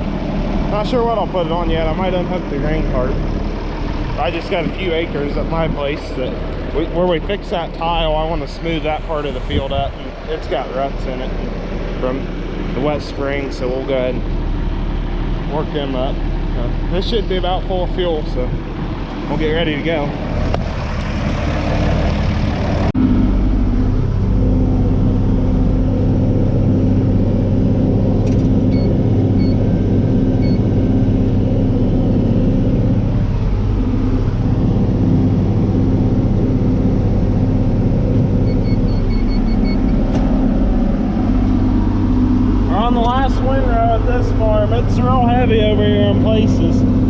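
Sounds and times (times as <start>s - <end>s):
tractor engine droning: 0.0s - 47.0s
short electronic beeps: 28.7s - 29.6s, 38.4s - 40.0s.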